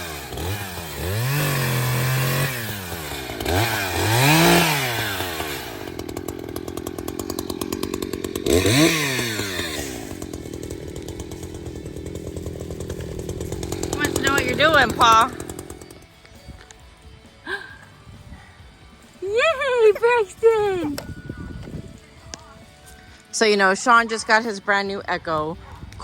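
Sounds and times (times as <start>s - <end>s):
chainsaw revving and idling: 0.0s - 17.9s.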